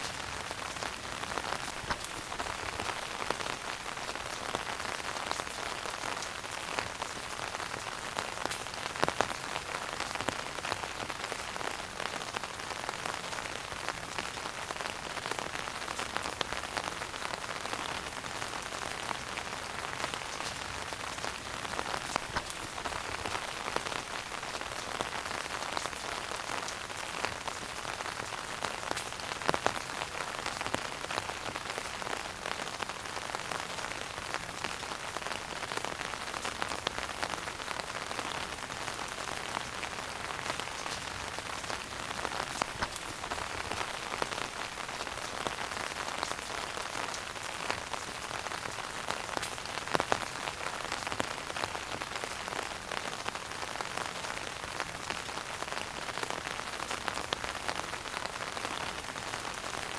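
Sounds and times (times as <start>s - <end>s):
wood fire crackling: 0.0s - 11.2s, 18.8s - 31.7s, 38.5s - 52.1s.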